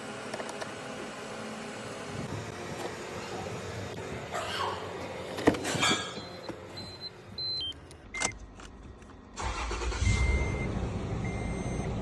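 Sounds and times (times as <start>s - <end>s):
car engine starting and running: 0.0s - 12.0s
short electronic dashboard beeps: 9.8s - 11.9s
low repeating beep: 10.1s - 11.9s.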